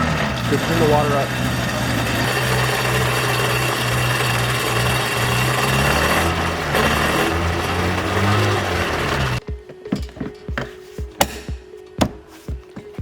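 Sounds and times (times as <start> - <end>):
two-stroke engine fast idle: 0.0 - 9.4.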